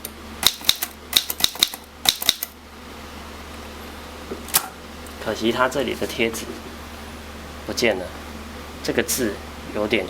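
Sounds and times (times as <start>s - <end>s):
typewriter key strikes: 0.4s - 2.5s.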